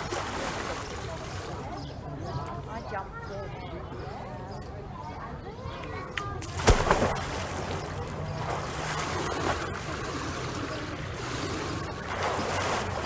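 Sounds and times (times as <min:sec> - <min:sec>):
water splashing and lapping: 0:00.0 - 0:01.8, 0:06.4 - 0:13.0
steady low hum: 0:06.4 - 0:13.0.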